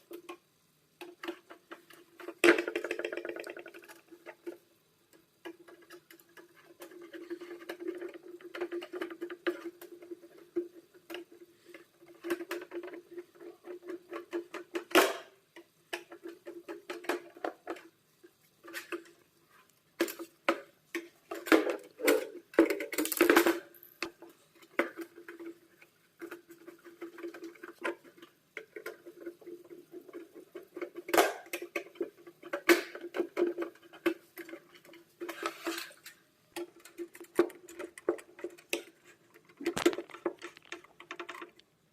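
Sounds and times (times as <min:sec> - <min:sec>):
clicks and scrapes of heater parts: 0:01.0 - 0:17.9, 0:18.6 - 0:23.4, 0:24.0 - 0:41.7.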